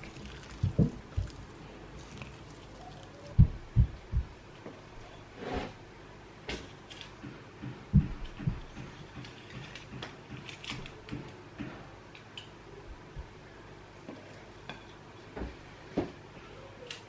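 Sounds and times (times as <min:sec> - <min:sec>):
dull thumps: 0:03.4 - 0:04.4.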